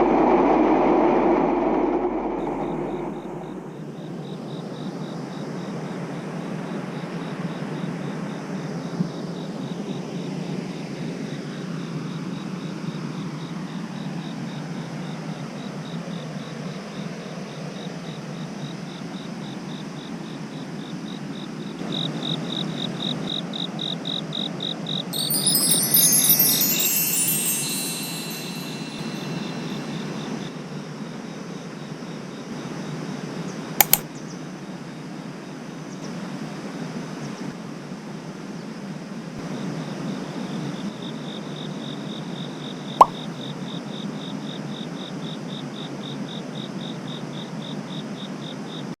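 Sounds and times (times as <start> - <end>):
steady low noise: 0.0 - 3.9
crickets chirping: 2.4 - 5.9, 25.2 - 30.5
falling chime tones: 25.2 - 30.4
sharp clicks: 33.8 - 34.0.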